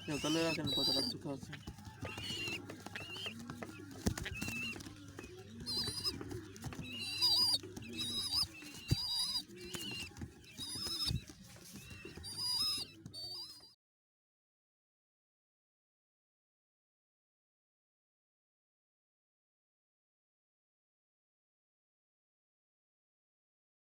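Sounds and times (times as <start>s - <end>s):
squab squeaky begging calls: 0.0s - 13.7s.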